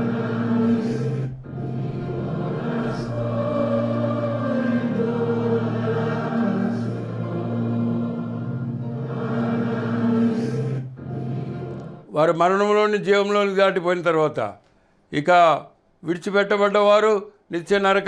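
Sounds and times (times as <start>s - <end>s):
choir-like voices holding chords: 0.0s - 12.1s
low drone: 0.0s - 12.1s
slow gliding melody: 0.0s - 12.1s.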